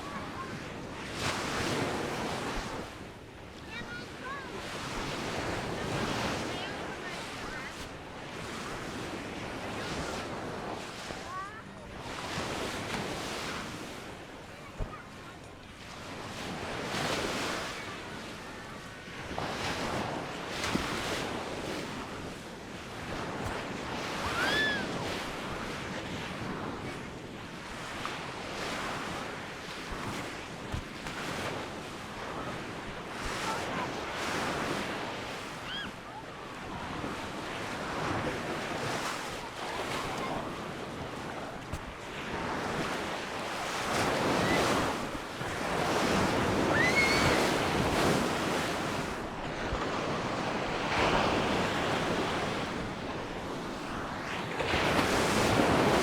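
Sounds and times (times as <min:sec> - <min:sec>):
waves breaking on beach: 0:00.0 - 0:56.0
wind on microphone: 0:00.0 - 0:56.0
short high calls: 0:46.7 - 0:47.4.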